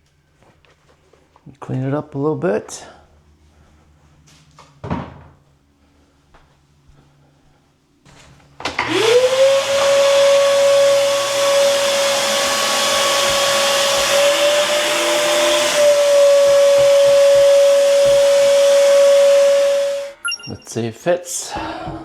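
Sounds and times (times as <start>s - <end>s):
vacuum cleaner motor whine: 8.6s - 20.2s.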